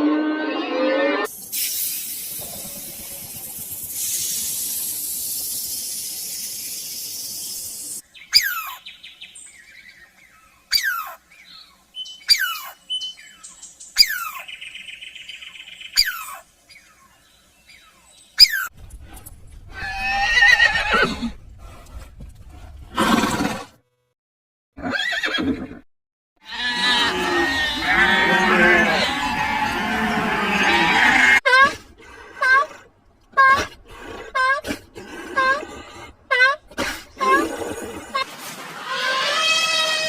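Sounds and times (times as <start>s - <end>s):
steady hiss: 1.3s - 8.0s
bird trill: 8.2s - 9.3s
bird calling: 8.2s - 17.1s
rough animal call: 26.4s - 32.8s, 33.4s - 40.0s.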